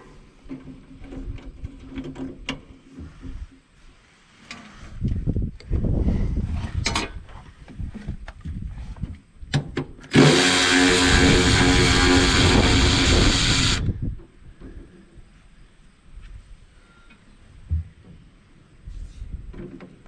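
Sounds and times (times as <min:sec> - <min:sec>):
power tool whining: 0:10.1 - 0:14.0.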